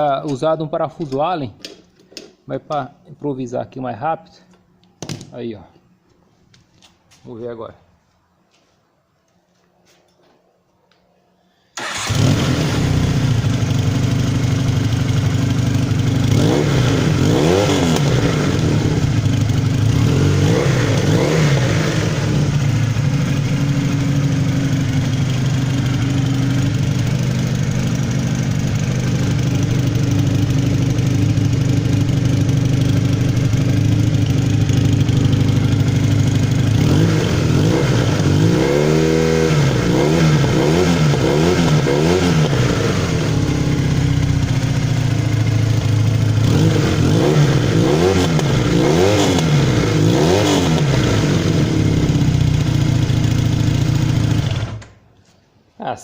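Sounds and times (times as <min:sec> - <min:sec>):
motorcycle engine idling and revving: 0:11.8 - 0:55.0.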